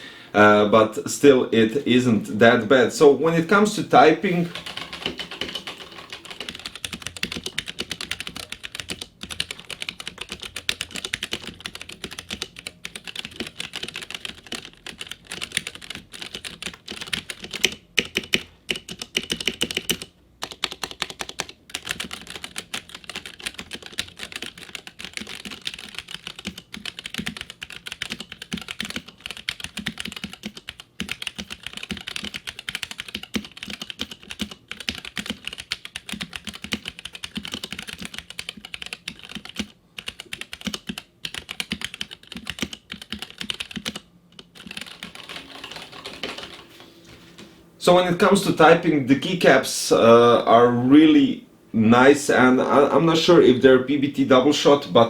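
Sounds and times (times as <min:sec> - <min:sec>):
mechanical keyboard typing: 0:04.0 - 0:47.0.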